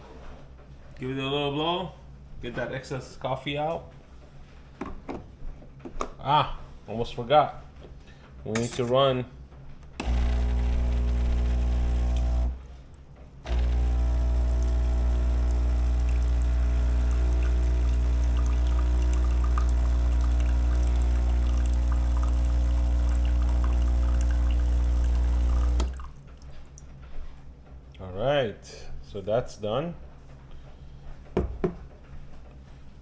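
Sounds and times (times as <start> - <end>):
espresso machine pump humming: 10.0 - 12.8, 13.4 - 26.2.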